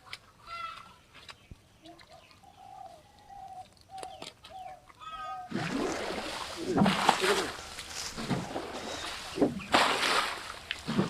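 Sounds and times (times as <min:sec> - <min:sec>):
bird cooing: 0:01.8 - 0:05.5.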